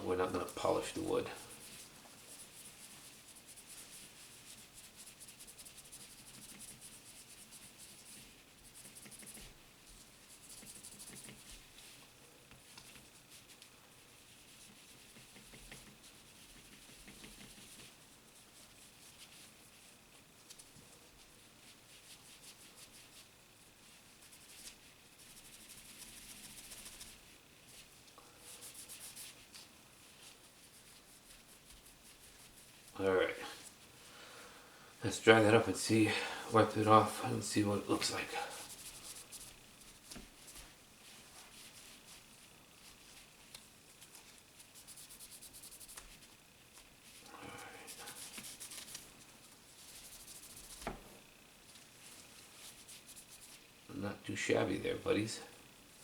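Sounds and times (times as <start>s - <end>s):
cloth rubbing a pocket knife: 21.7s - 27.9s, 47.9s - 53.7s.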